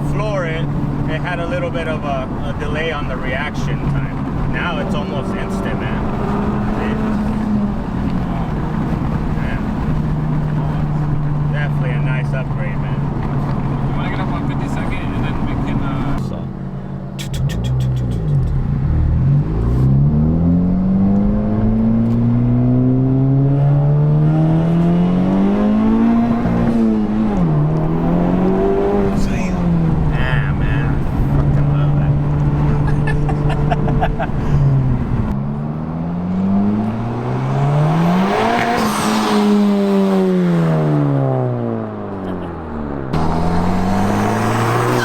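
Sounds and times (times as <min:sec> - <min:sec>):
car engine accelerating: 0:00.0 - 0:45.0.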